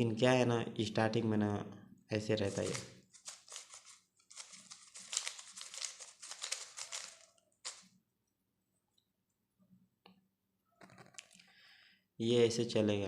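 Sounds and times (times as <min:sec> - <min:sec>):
puzzle cube plastic clicking: 0:02.6 - 0:07.9.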